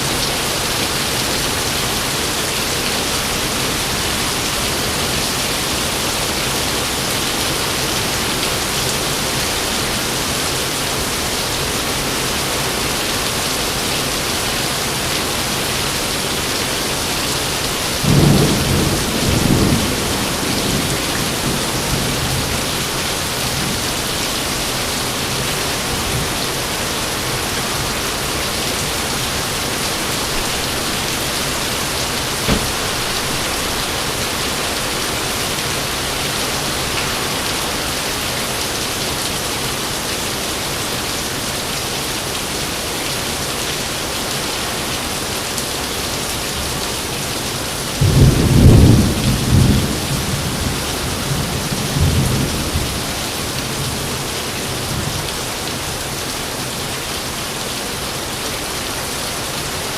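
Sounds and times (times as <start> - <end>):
heavy rain falling: 0.0 - 59.9
rolling thunder: 29.2 - 35.5
sharp thunder crack: 30.2 - 35.0.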